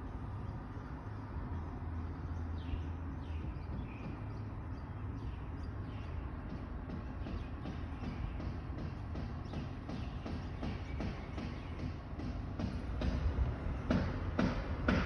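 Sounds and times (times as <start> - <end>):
birds chirping: 0.0 - 15.0
steady low hum: 0.0 - 15.0.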